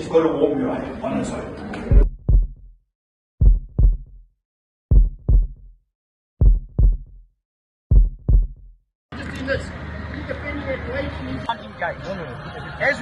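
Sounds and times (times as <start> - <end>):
heartbeat thumps: 1.9 - 2.8, 3.4 - 4.3, 4.9 - 5.8, 6.4 - 7.3, 7.9 - 8.8.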